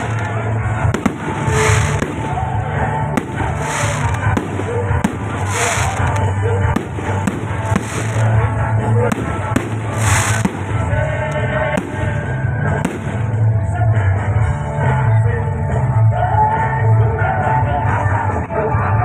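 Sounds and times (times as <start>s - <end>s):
fireworks bangs and crackles: 0.0s - 14.2s
loud music with heavy bass: 0.0s - 19.0s
hissing firework burst: 1.1s - 2.5s, 3.2s - 8.4s, 9.1s - 10.9s.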